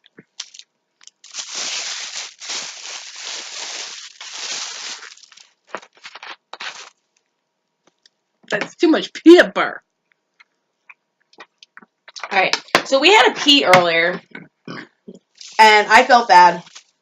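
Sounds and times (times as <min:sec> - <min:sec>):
wrapper crinkling: 0:00.1 - 0:07.2, 0:15.4 - 0:15.7, 0:16.4 - 0:17.0.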